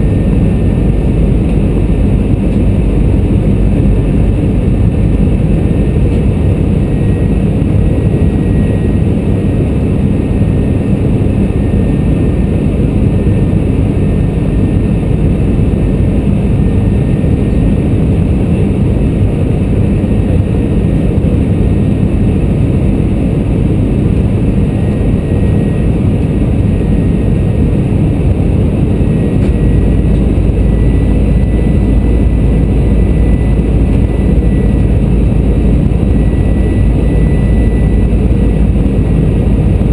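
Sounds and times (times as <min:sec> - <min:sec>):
airplane cabin engine noise: 0:00.0 - 0:39.9
deep rumble: 0:00.0 - 0:39.9.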